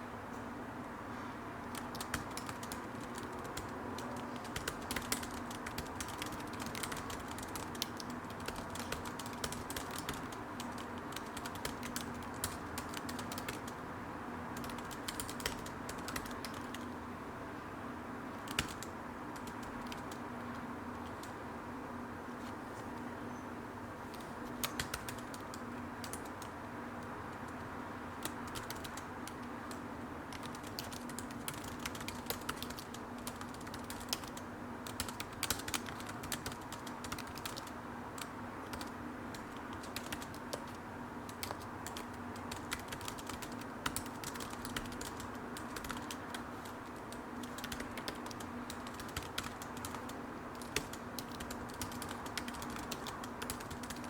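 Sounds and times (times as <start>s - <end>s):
computer keyboard typing: 1.7s - 13.8s, 14.6s - 17.0s, 18.3s - 21.4s, 24.1s - 26.6s, 27.3s - 54.0s.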